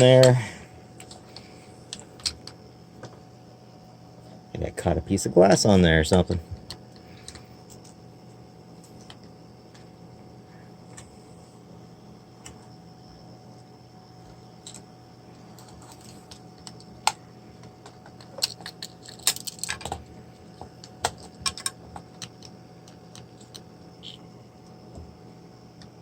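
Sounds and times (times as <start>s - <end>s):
faint low hum: 0.0s - 26.0s
plastic parts clicking and clattering: 15.6s - 24.2s.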